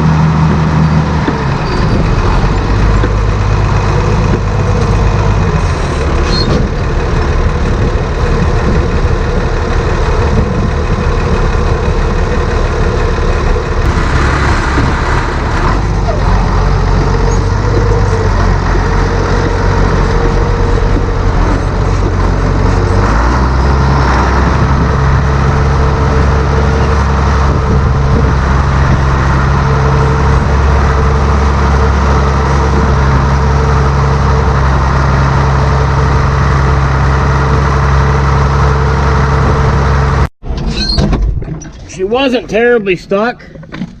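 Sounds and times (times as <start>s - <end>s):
tractor engine running: 0.0s - 44.0s.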